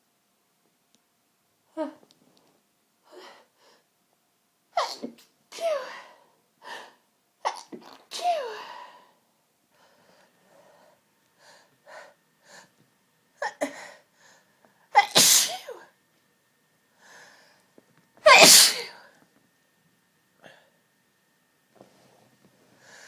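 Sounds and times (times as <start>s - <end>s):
person sneezing: 4.8s - 6.2s, 7.5s - 8.8s, 15.0s - 15.9s, 18.2s - 19.1s.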